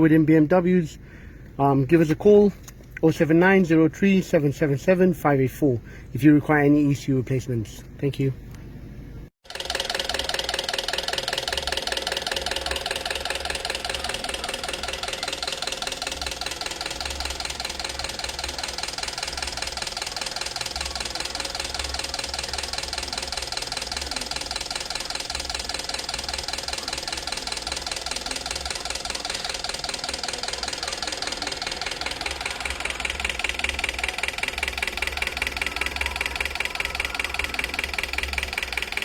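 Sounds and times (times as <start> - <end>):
fast even engine ticking: 9.4 - 39.0.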